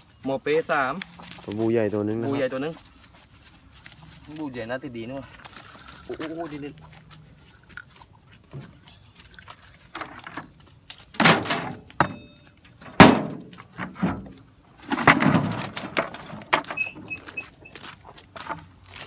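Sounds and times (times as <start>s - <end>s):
loud irregular thumps and knocks: 11.2s - 12.2s, 12.8s - 16.9s.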